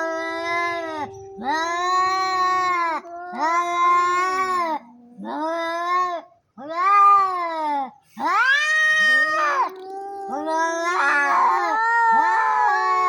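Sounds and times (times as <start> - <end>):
low held cat tone: 0.0 - 5.8
cats yowling: 0.0 - 13.0.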